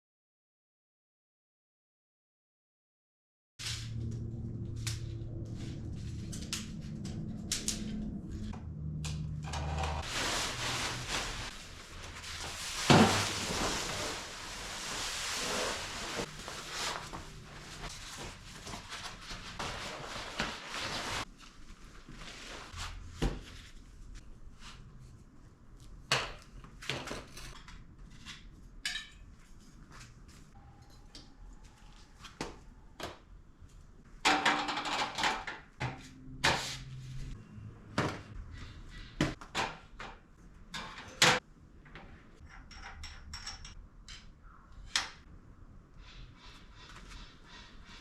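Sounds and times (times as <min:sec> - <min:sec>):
objects knocking and clattering: 0:34.2 - 0:36.1, 0:39.2 - 0:44.4.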